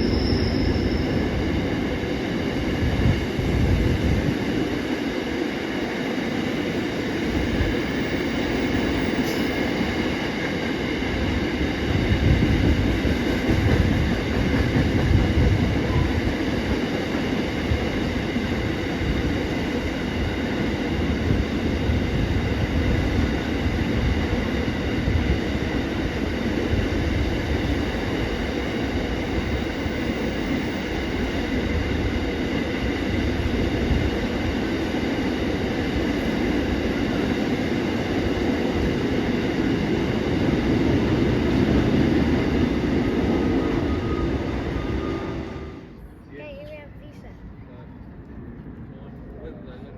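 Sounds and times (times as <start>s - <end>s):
high ringing whine: 0.0s - 1.8s
train wheels rumbling on rails: 0.0s - 49.4s.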